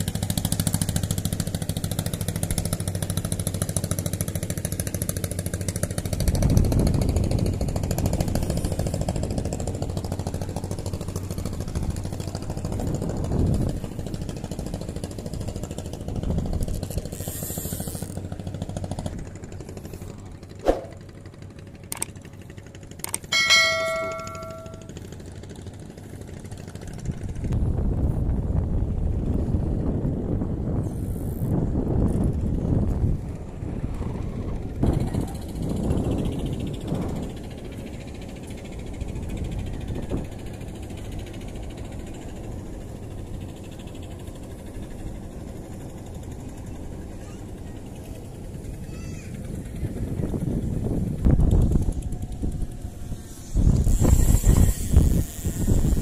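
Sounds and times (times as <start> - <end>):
small engine running: 0.0 - 56.0
wind on microphone: 6.2 - 10.3, 11.4 - 14.8, 27.1 - 40.7, 48.4 - 56.0
metallic ding: 23.3 - 24.9.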